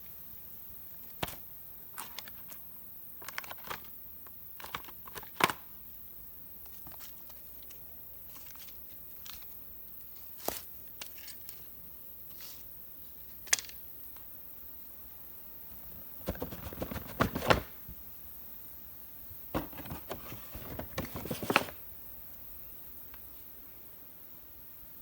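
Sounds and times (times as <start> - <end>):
quick clicking and crinkling: 16.2 - 17.8.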